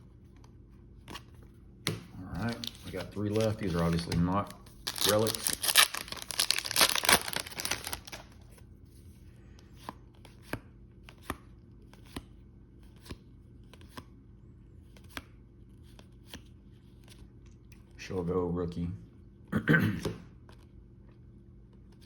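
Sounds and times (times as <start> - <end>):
foil pack ripping: 4.7 - 8.3.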